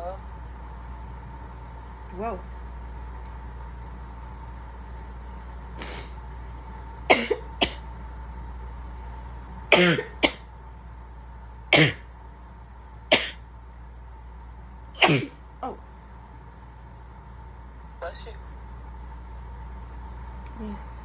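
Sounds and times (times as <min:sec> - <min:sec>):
woman coughing: 0:07.1 - 0:07.8, 0:09.7 - 0:10.4, 0:11.7 - 0:12.0, 0:13.1 - 0:13.4, 0:15.0 - 0:15.4.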